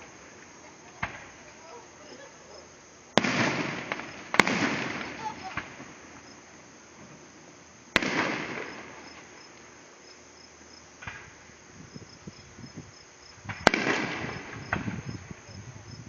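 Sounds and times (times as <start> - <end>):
firework pops and thumps: 0.0 - 1.4, 3.1 - 6.3, 7.9 - 9.7, 11.0 - 11.5, 13.4 - 15.2
firework bangs: 0.0 - 9.8, 11.0 - 11.6, 13.3 - 16.0
crickets chirping: 0.0 - 16.0.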